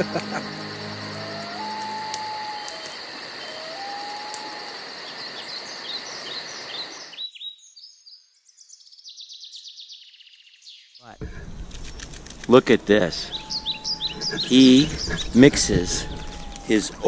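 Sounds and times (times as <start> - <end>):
insect drone: 0.0 - 7.2, 11.2 - 17.0
sliding whistled bird calls: 0.0 - 7.3, 12.9 - 17.0
rapid high bird chirping: 13.1 - 16.8.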